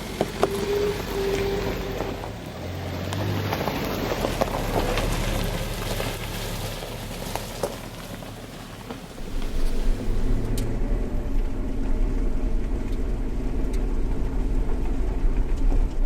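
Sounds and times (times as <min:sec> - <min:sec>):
tyres crunching on gravel: 0:00.0 - 0:10.6
car engine humming: 0:00.0 - 0:16.0.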